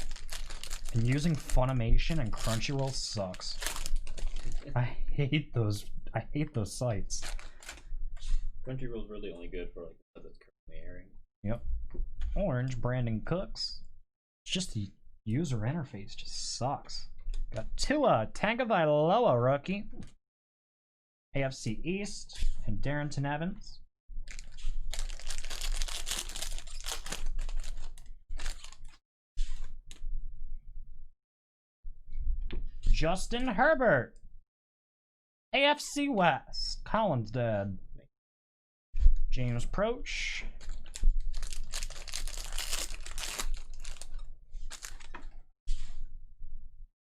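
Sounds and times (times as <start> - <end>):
trading cards and wrappers rustling: 0.0 - 4.7, 7.0 - 8.4, 24.3 - 29.8, 40.6 - 45.4.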